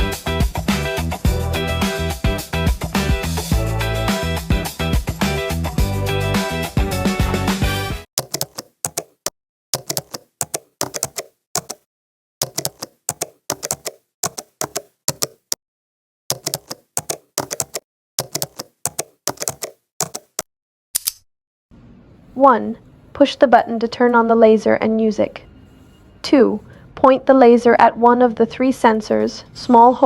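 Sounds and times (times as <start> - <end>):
background music: 0.0 - 8.1
keyboard keystroke clicks: 8.2 - 11.8, 12.4 - 15.6, 16.3 - 21.2.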